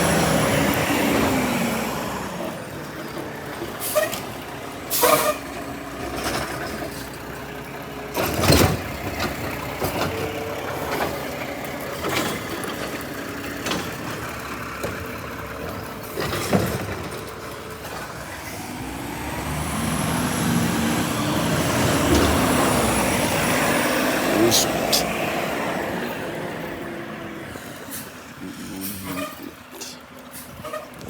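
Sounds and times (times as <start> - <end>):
garbage truck engine revving: 0.0 - 30.6
knocks and clatter: 8.1 - 18.2.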